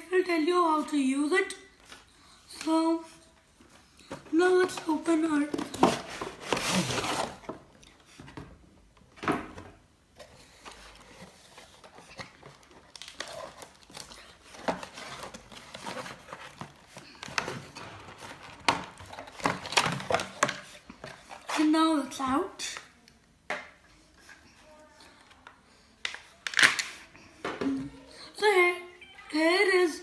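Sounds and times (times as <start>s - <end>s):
packaging rustling and crinkling: 4.1s - 8.4s, 10.2s - 21.7s.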